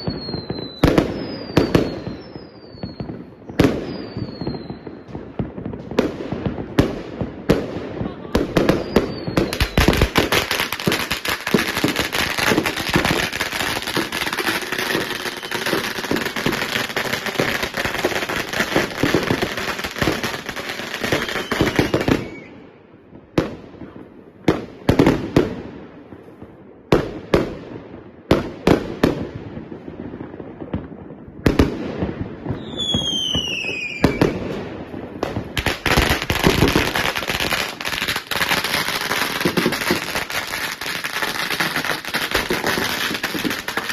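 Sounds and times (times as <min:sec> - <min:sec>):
falling firework whistle: 0:00.0 - 0:05.2, 0:08.6 - 0:22.7, 0:32.5 - 0:34.6
firecrackers crackling: 0:00.0 - 0:43.9
firework bangs: 0:00.0 - 0:43.9.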